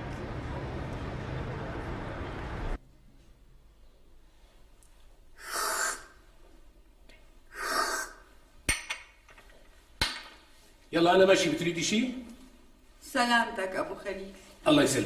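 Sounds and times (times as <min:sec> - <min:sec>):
person breathing heavily: 0:05.4 - 0:06.2.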